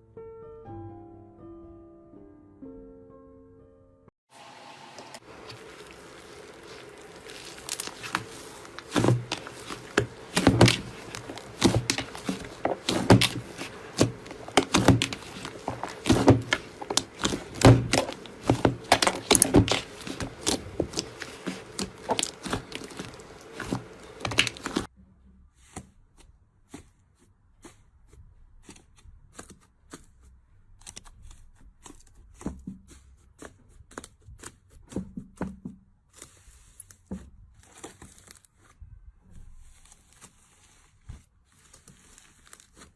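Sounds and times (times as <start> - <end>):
slime squeezed by hand: 5.3 - 24.9.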